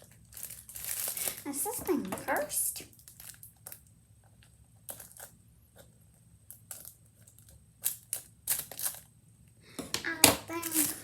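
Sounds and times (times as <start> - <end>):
plastic packaging crackling: 0.0 - 3.9, 6.6 - 9.1, 10.0 - 11.0.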